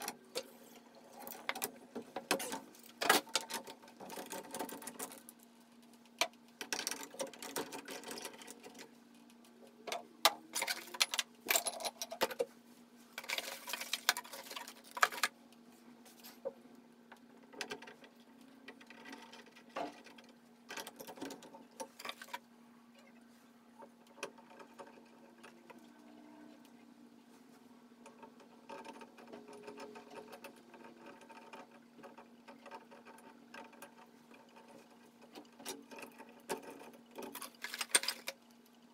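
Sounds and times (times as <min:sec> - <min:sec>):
hand tools and metal parts clicking: 0:06.0 - 0:12.5, 0:28.1 - 0:38.4.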